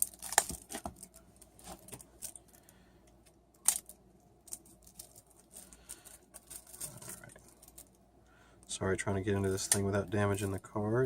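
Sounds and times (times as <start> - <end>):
packaging crackling and tearing: 0.0 - 2.5, 3.6 - 8.0.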